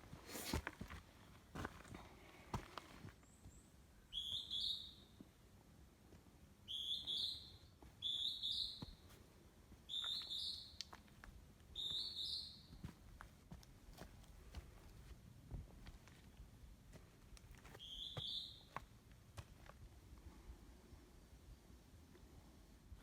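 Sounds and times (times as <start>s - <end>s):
songbird whistling: 4.1s - 5.2s, 6.7s - 9.0s, 9.9s - 10.8s, 11.8s - 12.7s, 17.8s - 18.8s.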